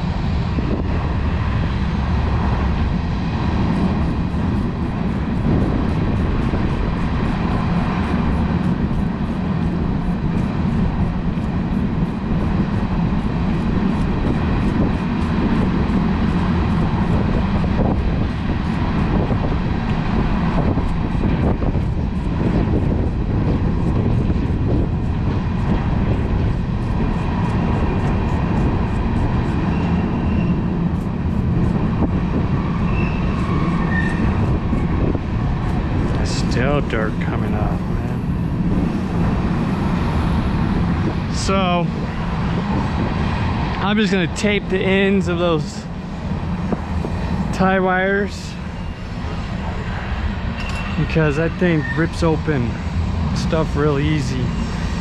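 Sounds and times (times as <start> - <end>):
low rumbling noise: 0.0 - 55.0.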